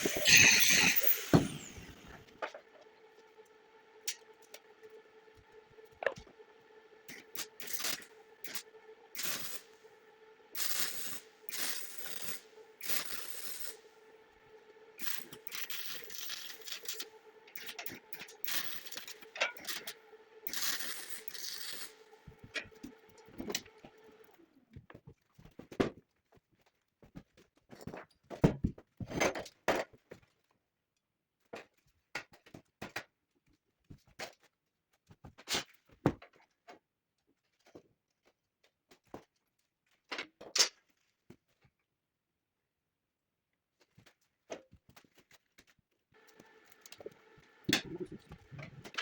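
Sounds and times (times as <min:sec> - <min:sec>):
noisy hiss: 0:00.0 - 0:17.0
steady hum: 0:00.0 - 0:24.6, 0:46.2 - 0:49.0.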